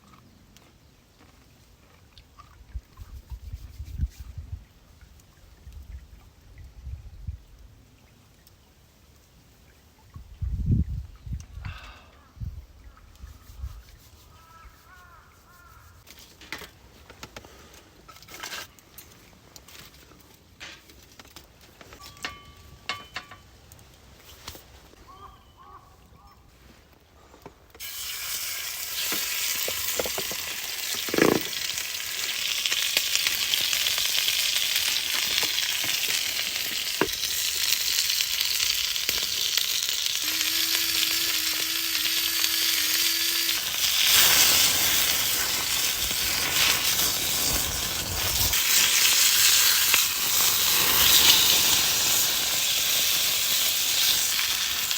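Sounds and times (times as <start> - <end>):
steak sizzling in a pan: 27.8 - 54.9.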